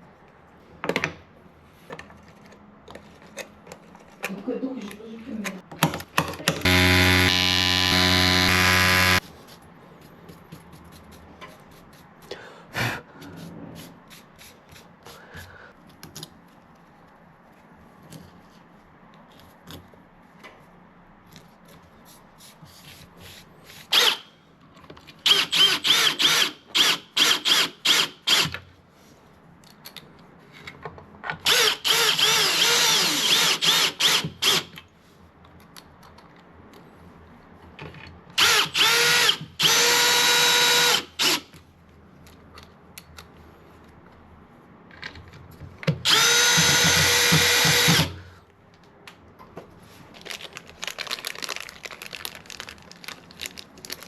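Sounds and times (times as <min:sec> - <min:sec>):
power drill running: 0:06.6 - 0:09.2, 0:31.5 - 0:34.6, 0:38.4 - 0:41.4, 0:46.0 - 0:48.2.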